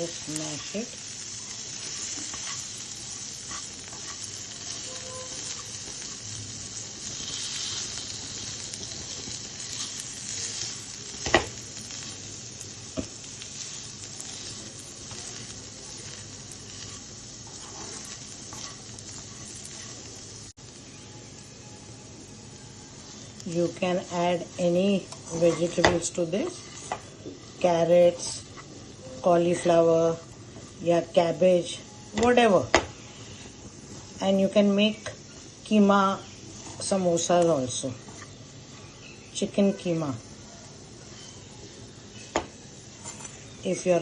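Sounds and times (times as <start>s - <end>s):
food sizzling in hot oil: 0.0s - 44.0s
utensil scraping pan: 16.7s - 20.0s, 24.2s - 28.7s, 42.9s - 43.5s.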